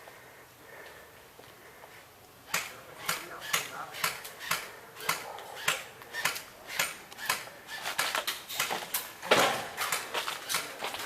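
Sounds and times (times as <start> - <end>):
footsteps on crunchy ground: 7.8 - 11.0.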